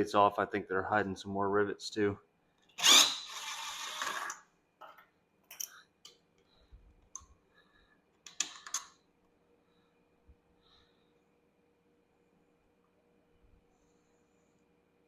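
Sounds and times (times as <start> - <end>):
light clicks and taps of tools: 4.8 - 7.4, 8.2 - 9.0.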